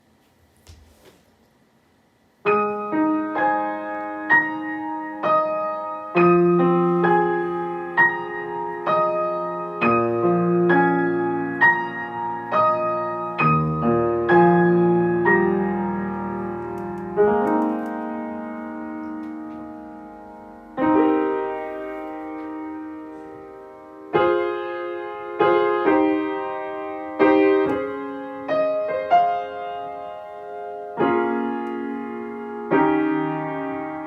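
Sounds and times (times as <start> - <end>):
piano broken chords: 2.4 - 34.0.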